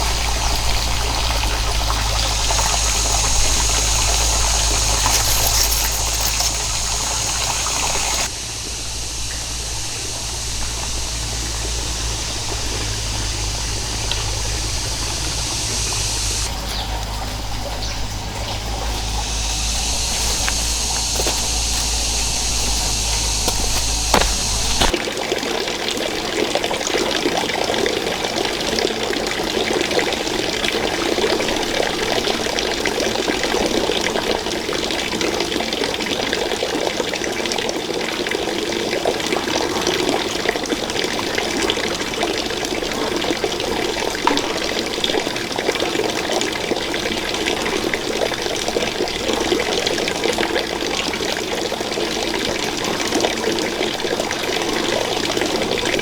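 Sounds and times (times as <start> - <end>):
water splashes and drips: 0.0 - 9.6, 15.7 - 25.0
water running: 0.0 - 25.0.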